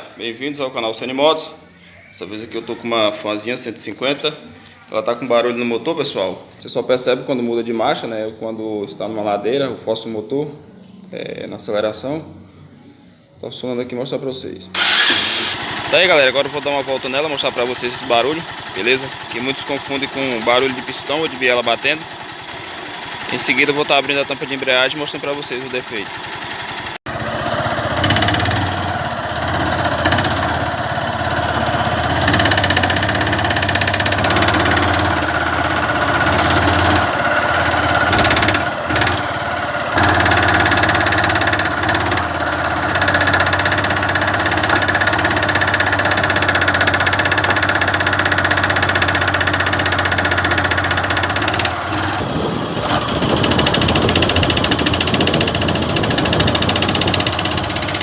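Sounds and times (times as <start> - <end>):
gear rattle on gear changes: 14.8 - 26.9, 27.5 - 58.0
motorcycle engine running: 14.8 - 58.0.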